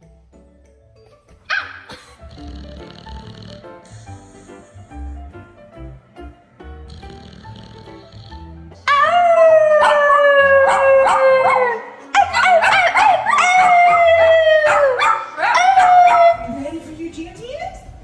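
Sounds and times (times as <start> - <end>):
dog howling: 8.8 - 16.5.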